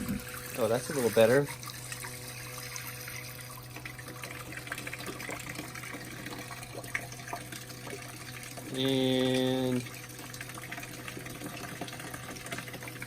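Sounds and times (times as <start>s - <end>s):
water spraying from shower head: 0.0s - 3.6s
water pump humming: 0.0s - 13.0s.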